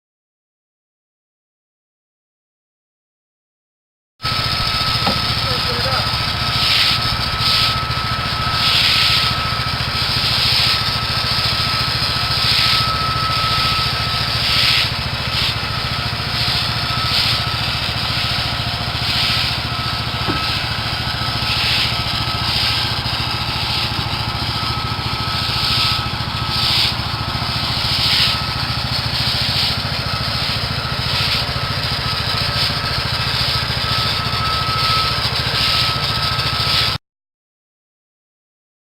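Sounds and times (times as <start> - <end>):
small gas engine running: 4.2 - 37.0
gritty hissing strokes: 4.6 - 34.2.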